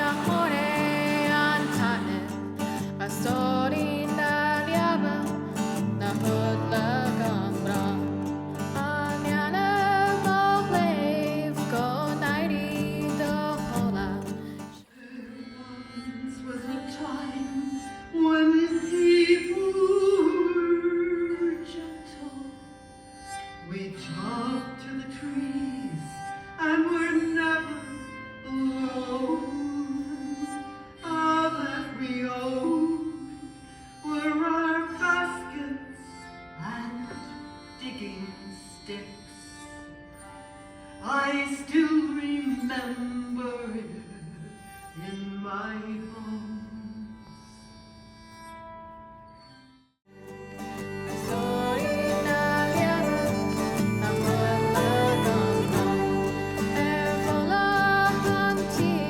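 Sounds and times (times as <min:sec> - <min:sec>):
steady held notes: 0:00.0 - 0:14.8, 0:50.2 - 0:59.0
sustained background tones: 0:00.0 - 0:14.8, 0:50.1 - 0:59.0
slow gliding melody: 0:00.0 - 0:22.6, 0:50.1 - 0:59.0.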